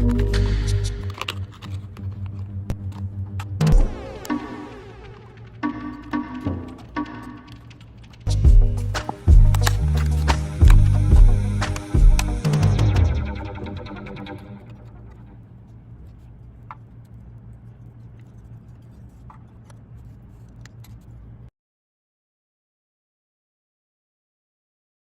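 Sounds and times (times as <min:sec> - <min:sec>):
electronic music with bass: 0:00.0 - 0:01.1, 0:08.3 - 0:14.6
faint low hum: 0:04.9 - 0:21.5.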